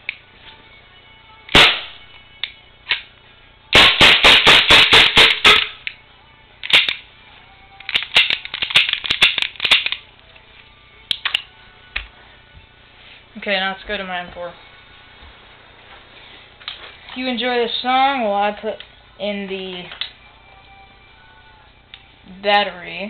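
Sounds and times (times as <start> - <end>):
airsoft pistol firing: 1.5 - 2.0, 3.8 - 5.8.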